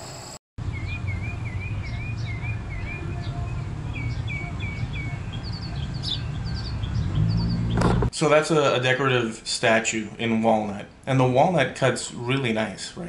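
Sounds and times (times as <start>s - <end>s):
small songbirds chirping: 0.6s - 8.0s.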